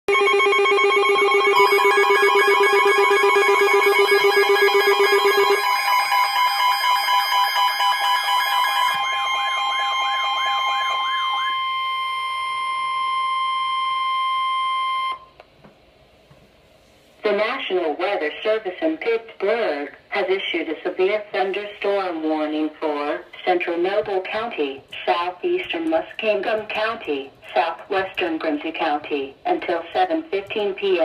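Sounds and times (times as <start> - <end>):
steady electronic tones: 0.1 - 13.4
steady high tone: 0.1 - 15.2
pulsing ringing alarm: 0.1 - 15.3
wailing alarm tone: 0.1 - 15.3.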